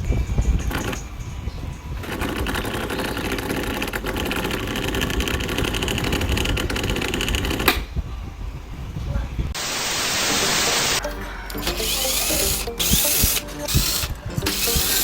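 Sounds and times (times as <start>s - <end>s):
electric fan rattling and ticking: 0.0s - 9.3s, 11.5s - 15.0s.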